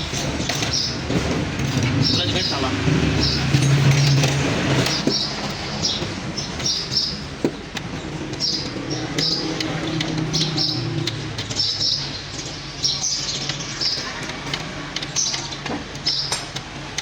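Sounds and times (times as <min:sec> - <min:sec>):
small bird chirping: 0:04.8 - 0:07.3, 0:08.3 - 0:16.5.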